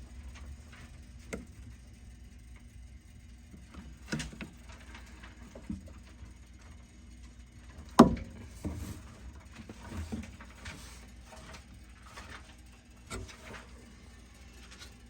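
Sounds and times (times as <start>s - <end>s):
objects being handled: 8.2s - 13.9s.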